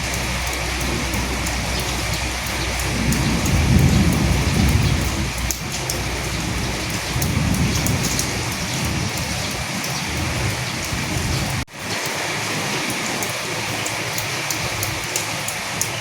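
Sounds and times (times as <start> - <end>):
low rumble: 0.0 - 11.7
rain drips ticking: 0.0 - 16.0
rain falling: 0.0 - 16.0.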